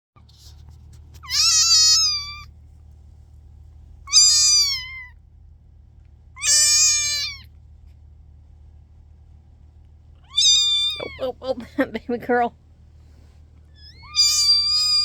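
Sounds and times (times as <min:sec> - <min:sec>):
kitten meowing: 0:01.2 - 0:02.5, 0:04.1 - 0:05.2, 0:06.4 - 0:07.5, 0:10.2 - 0:11.4, 0:13.7 - 0:15.0.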